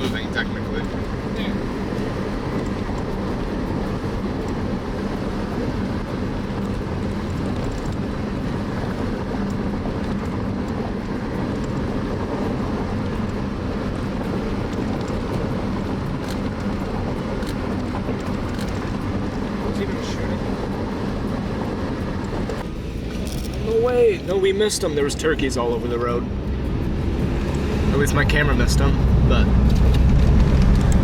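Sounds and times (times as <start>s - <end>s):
road and engine noise in car: 0.0s - 31.0s.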